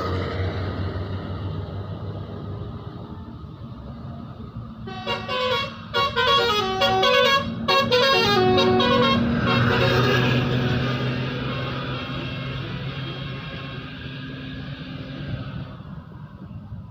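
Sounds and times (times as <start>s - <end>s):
bus engine idling: 0.0s - 13.7s
multi-tone bus horn melody: 4.8s - 11.5s.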